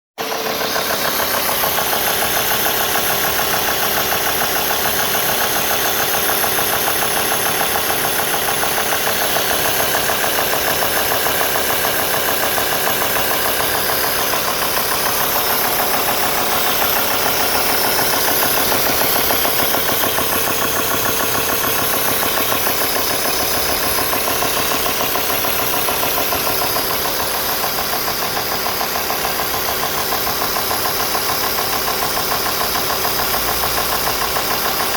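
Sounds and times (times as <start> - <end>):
diesel engine running: 0.2 - 34.9
strange engine noise: 0.2 - 34.9.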